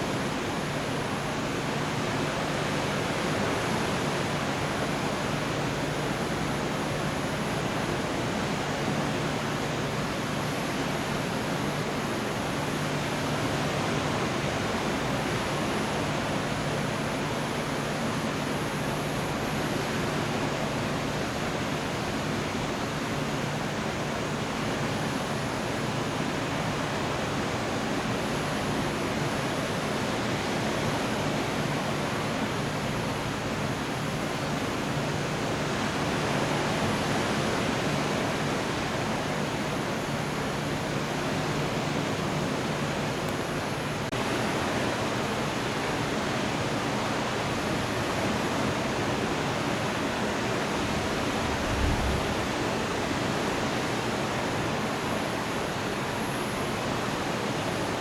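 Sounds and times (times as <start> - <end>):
faint low hum: 50.8 - 53.2
storm rushing hiss: 50.8 - 53.7.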